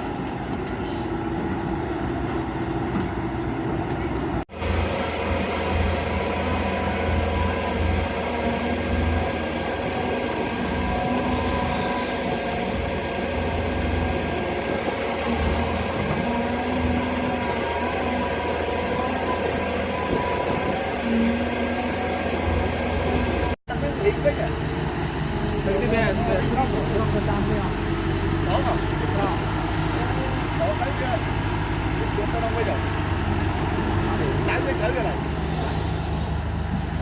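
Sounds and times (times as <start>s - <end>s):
excavator diesel engine rumble: 0.0s - 37.0s
hydraulic whine: 4.0s - 23.6s.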